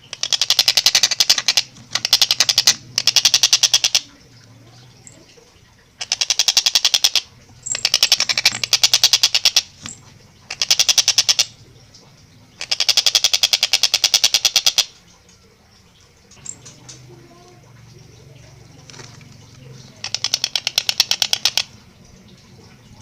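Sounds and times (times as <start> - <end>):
kingfisher rattling call: 0.0 - 4.1, 5.8 - 11.6, 12.6 - 15.0, 17.8 - 21.9.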